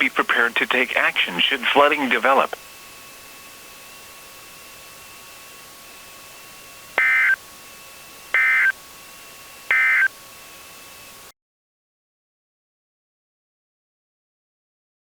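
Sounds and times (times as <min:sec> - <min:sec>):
steady radio hiss: 0:00.0 - 0:08.7, 0:09.7 - 0:10.1
faint hum tones: 0:00.0 - 0:11.3
digital data tone bursts: 0:07.0 - 0:07.4, 0:08.4 - 0:08.8, 0:09.7 - 0:10.1.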